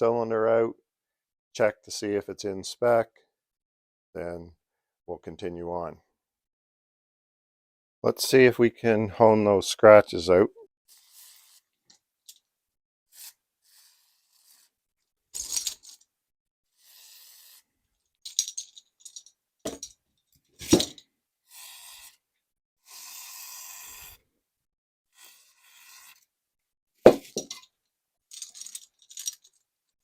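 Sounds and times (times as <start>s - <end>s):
metal tools clinking and knocking: 18.3s - 20.0s, 27.1s - 27.7s, 28.3s - 29.6s.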